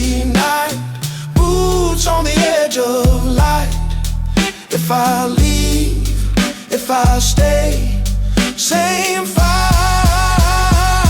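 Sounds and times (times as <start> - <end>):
slow dark blues music: 0.0 - 11.0.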